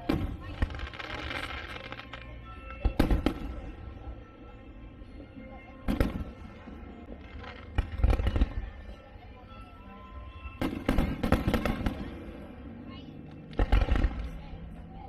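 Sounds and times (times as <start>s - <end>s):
fireworks bursting: 0.0s - 3.7s, 10.6s - 12.4s, 13.3s - 14.6s
music: 0.0s - 15.0s.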